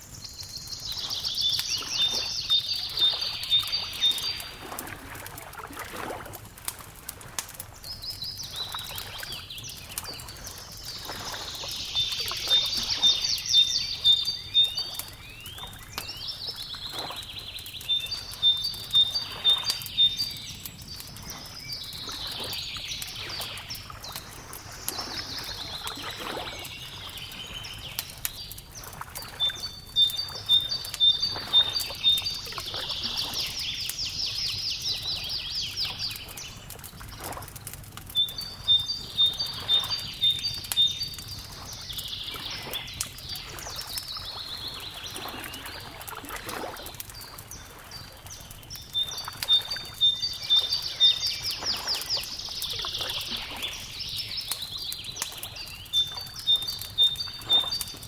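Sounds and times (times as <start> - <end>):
songbirds singing: 0.0 - 5.5, 7.6 - 58.0
wood fire crackling: 0.0 - 58.0.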